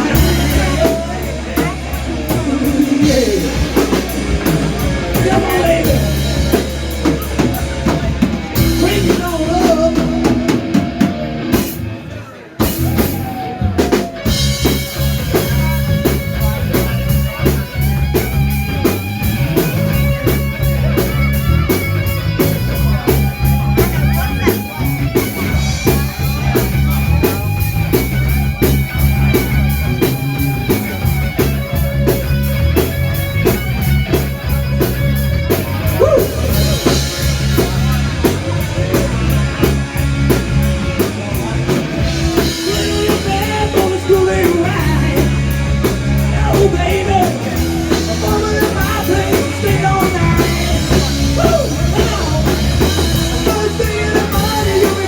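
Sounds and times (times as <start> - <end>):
bending electric guitar lead: 0.0 - 55.0
live rock band playing: 0.0 - 55.0.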